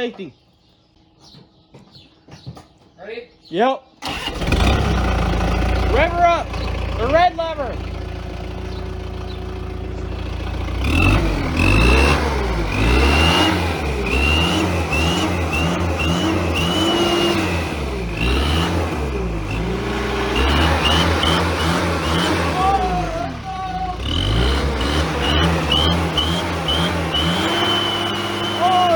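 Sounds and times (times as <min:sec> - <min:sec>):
diesel engine revving: 0:04.0 - 0:28.9
turbo whistle: 0:15.5 - 0:17.5, 0:25.2 - 0:28.9.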